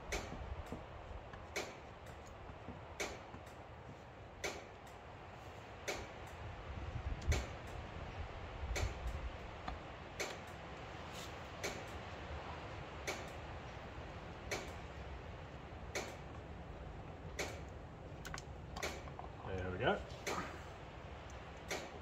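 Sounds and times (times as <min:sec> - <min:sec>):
sharp clicks: 0:07.2 - 0:07.8, 0:08.7 - 0:09.3, 0:13.0 - 0:13.4, 0:14.5 - 0:15.0, 0:15.9 - 0:16.4, 0:17.3 - 0:20.5, 0:21.2 - 0:22.0.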